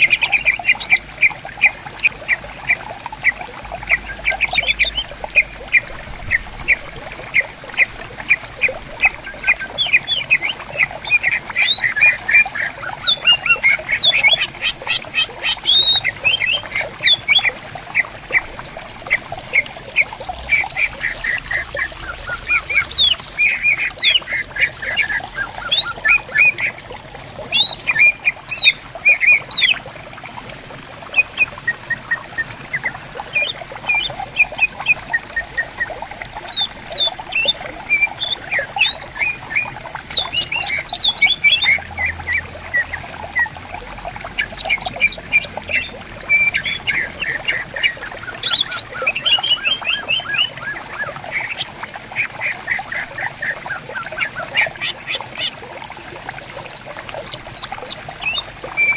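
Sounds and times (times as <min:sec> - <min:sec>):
stream trickling: 0:00.0 - 0:58.9
birds chirping and whistling: 0:03.9 - 0:06.9, 0:08.6 - 0:18.4, 0:20.3 - 0:26.7, 0:27.5 - 0:29.8, 0:36.5 - 0:42.9, 0:44.4 - 0:51.6.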